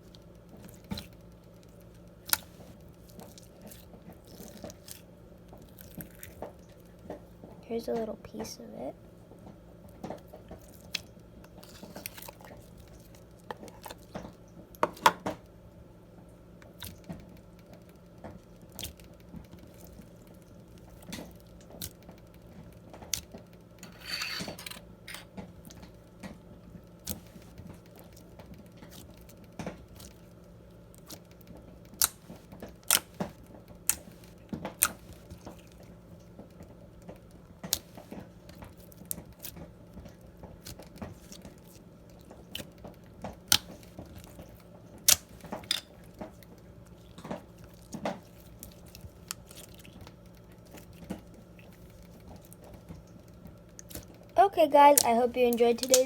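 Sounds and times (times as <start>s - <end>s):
slime squelch: 0.0s - 8.9s, 10.0s - 15.4s, 26.9s - 56.0s
slime sticky clicks and pops: 32.0s - 33.2s.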